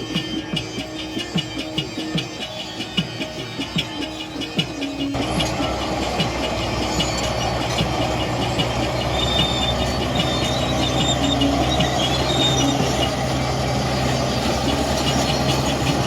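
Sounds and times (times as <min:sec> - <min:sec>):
music: 0:00.0 - 0:16.0
high-pitched squeals: 0:02.5 - 0:16.0
earthmover diesel engine: 0:04.9 - 0:16.0.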